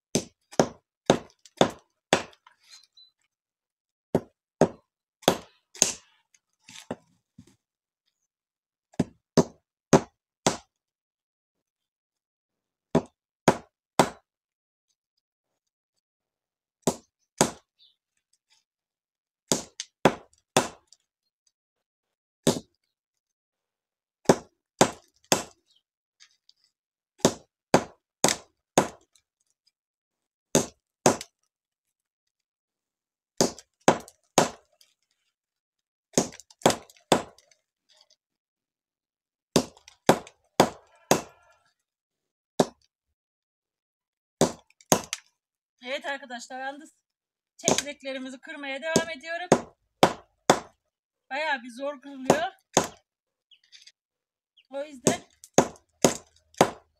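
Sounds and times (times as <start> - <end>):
hard stones being cracked: 36.1 - 38.1, 52.6 - 54.0.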